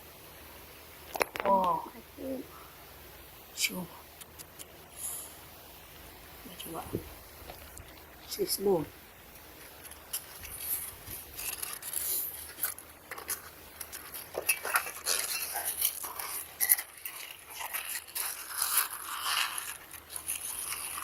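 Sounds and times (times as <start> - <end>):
scraping with clicks and knocks: 9.4 - 21.0.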